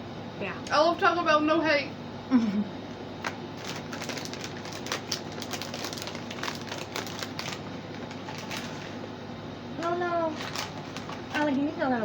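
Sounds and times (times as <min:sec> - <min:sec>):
plastic wrapper crinkling: 0:03.2 - 0:09.0, 0:09.8 - 0:11.8.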